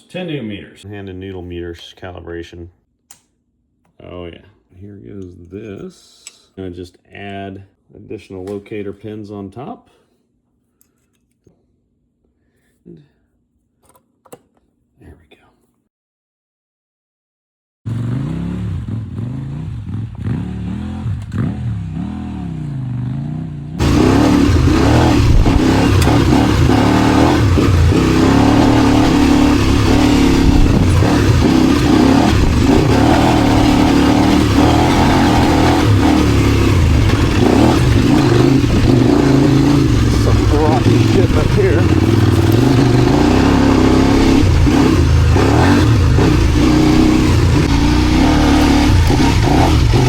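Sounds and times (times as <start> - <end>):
motorcycle engine revving: 17.9 - 50.0.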